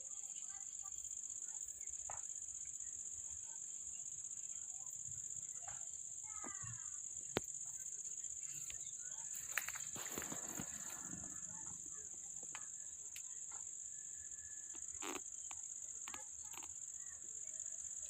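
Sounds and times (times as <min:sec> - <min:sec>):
crickets chirring: 0:00.0 - 0:18.0.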